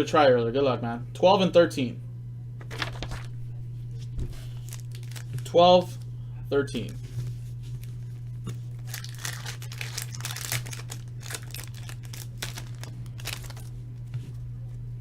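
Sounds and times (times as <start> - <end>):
card wrappers tearing and crinkling: 2.6 - 3.4, 4.4 - 6.0, 7.7 - 13.8.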